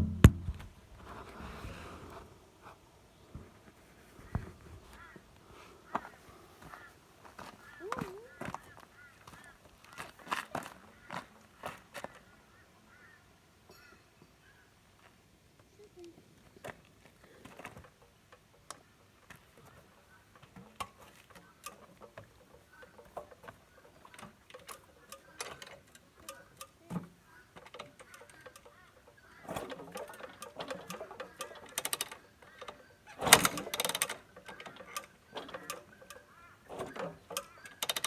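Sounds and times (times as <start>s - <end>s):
clicks and knocks: 0.0s - 0.8s, 20.4s - 38.0s
engine clattering on kick-start: 17.6s - 38.0s.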